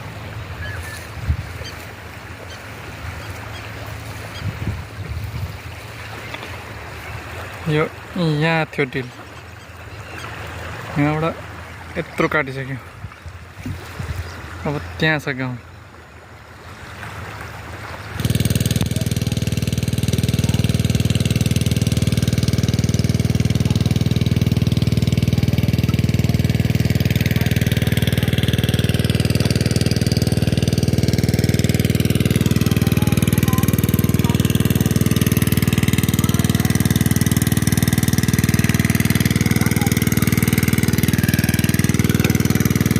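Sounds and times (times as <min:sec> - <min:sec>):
small petrol engine running: 0:18.1 - 0:42.9.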